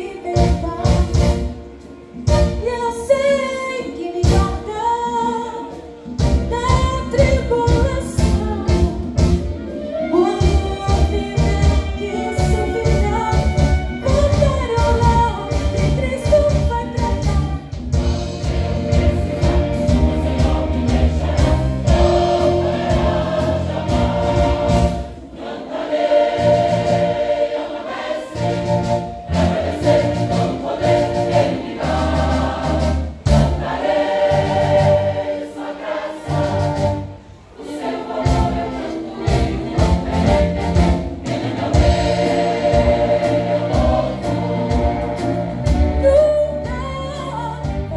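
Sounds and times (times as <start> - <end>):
band accompaniment: 0.0 - 47.9
choir singing gospel song: 17.2 - 46.0.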